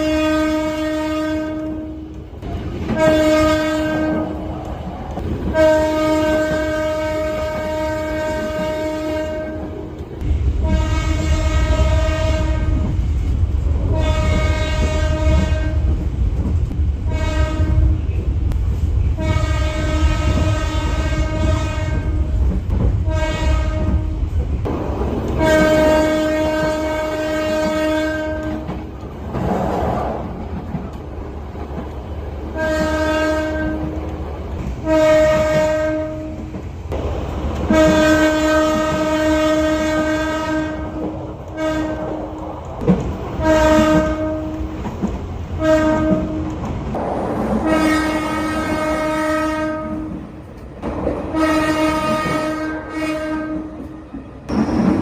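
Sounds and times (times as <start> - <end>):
locomotive air horn blasts: 0.0 - 2.2, 2.9 - 4.6, 5.4 - 9.9, 10.6 - 12.9, 13.8 - 15.9, 17.1 - 18.2, 19.1 - 22.4, 23.0 - 24.3, 25.4 - 28.8, 32.5 - 34.0, 34.8 - 36.5, 37.7 - 42.2, 43.4 - 44.8, 45.6 - 46.6, 47.6 - 50.3, 51.3 - 53.9
train rumbling: 0.0 - 55.0.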